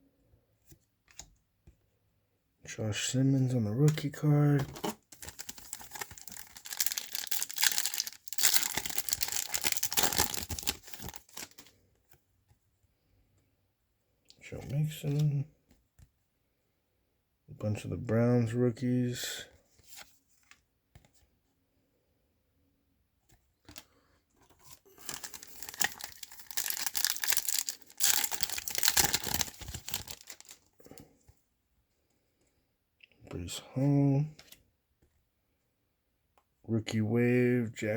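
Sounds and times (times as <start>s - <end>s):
wrapper tearing and crinkling: 4.8s - 11.7s, 24.9s - 30.6s.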